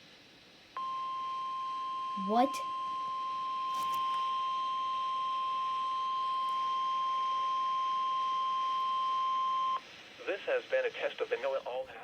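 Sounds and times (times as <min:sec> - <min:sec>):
steady high-pitched alarm tone: 0:00.8 - 0:09.8.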